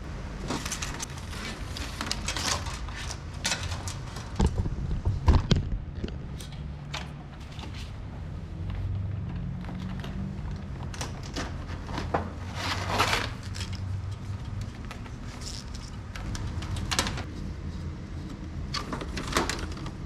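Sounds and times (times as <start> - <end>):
steady low hum: 0.0 - 20.0
scraping rustle: 9.9 - 17.9.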